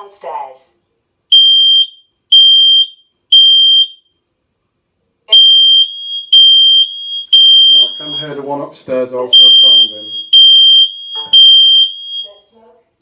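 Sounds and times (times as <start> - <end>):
faint steady alarm tone: 1.3 - 4.2, 5.3 - 8.5, 9.3 - 12.5
smoke alarm beeping: 1.3 - 4.2, 5.3 - 8.4, 9.3 - 12.4.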